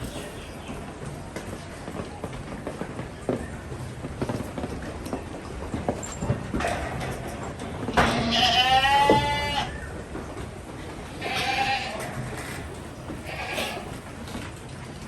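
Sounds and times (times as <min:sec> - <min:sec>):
goats bleating: 0:07.9 - 0:09.8, 0:11.0 - 0:14.1.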